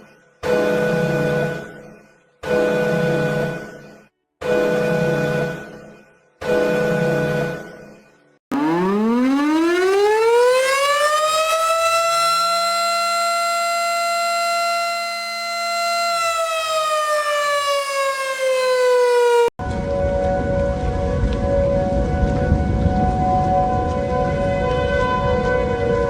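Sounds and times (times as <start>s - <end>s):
warning siren wailing: 8.5s - 26.0s.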